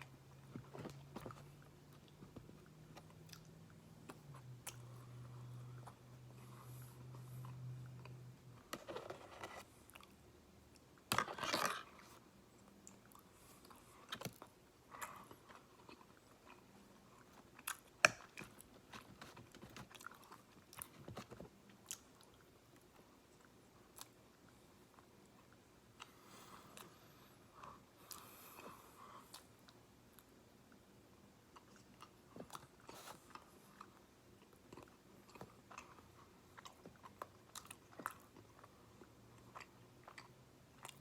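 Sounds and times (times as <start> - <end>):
person chewing crunchy food: 31.5 - 41.0.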